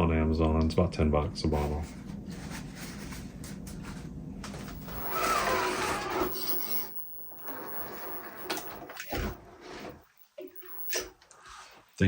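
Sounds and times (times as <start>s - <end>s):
rubbing and scraping handling noise: 1.4s - 12.0s
squeaky falling scrape: 4.7s - 11.9s.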